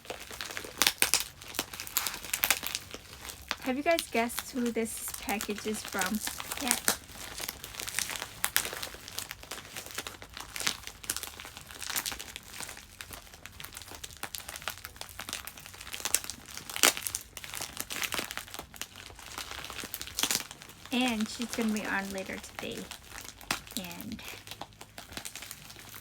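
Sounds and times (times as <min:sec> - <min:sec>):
packing tape peeling: 0:00.0 - 0:26.0
plastic bag crinkling: 0:00.0 - 0:26.0.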